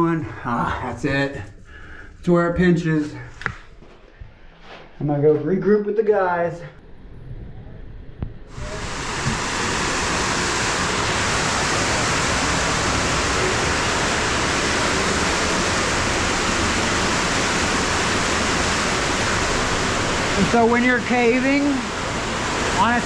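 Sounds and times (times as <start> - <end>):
waterfall pouring in a cave: 8.5 - 23.0.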